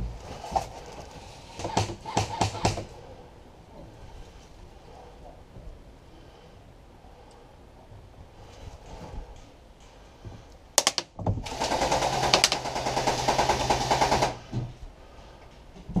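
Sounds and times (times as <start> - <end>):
airsoft gun firing: 10.8 - 14.4.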